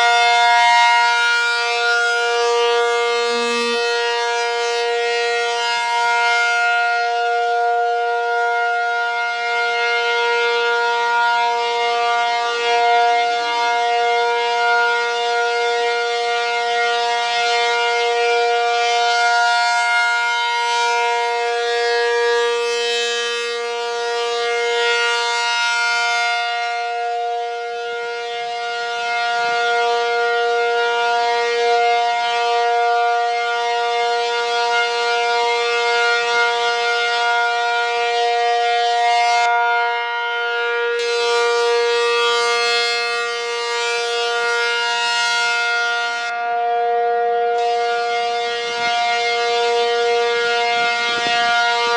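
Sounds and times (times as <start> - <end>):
warning siren steady tone: 0.0 - 51.9.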